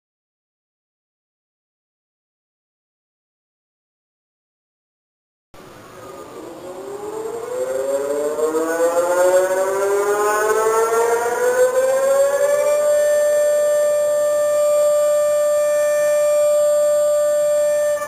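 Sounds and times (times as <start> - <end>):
civil defence siren winding up: 5.6 - 18.0.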